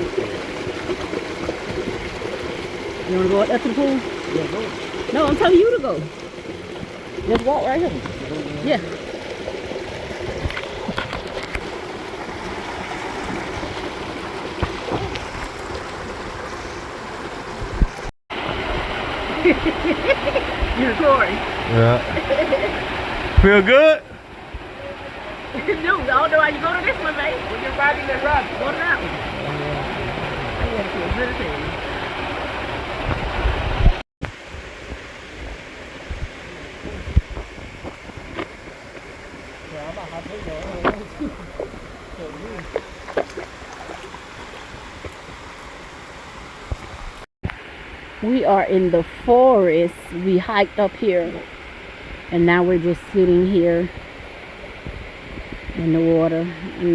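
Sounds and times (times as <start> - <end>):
waterfall and stream rushing: 0.0 - 56.9
wind buffeting microphone: 14.6 - 45.6, 53.6 - 56.9.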